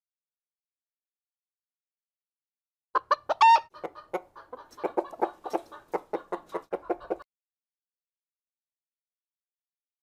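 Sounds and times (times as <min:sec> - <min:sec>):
chicken squawk: 0:03.0 - 0:07.2
chicken clucking: 0:03.0 - 0:07.3.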